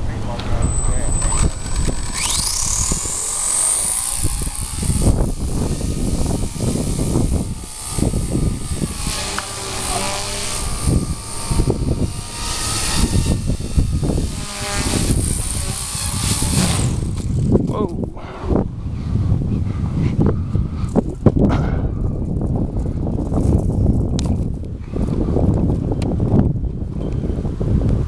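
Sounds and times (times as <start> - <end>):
rc helicopter motor whine: 0.0 - 21.4
wind buffeting microphone: 0.0 - 28.0.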